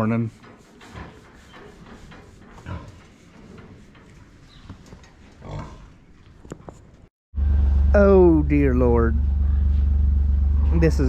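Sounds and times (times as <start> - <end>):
pigs grunting: 2.5 - 3.1, 5.4 - 6.0.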